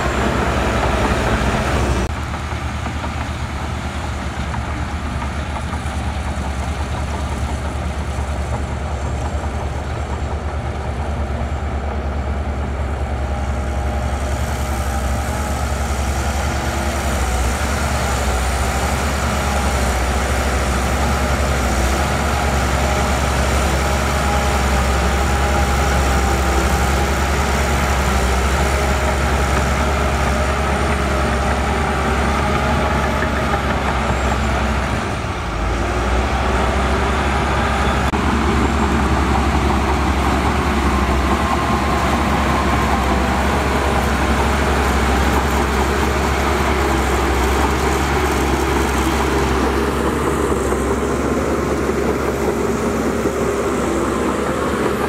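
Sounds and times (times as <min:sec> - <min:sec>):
diesel earth-moving machinery running: 0:00.0 - 0:55.0.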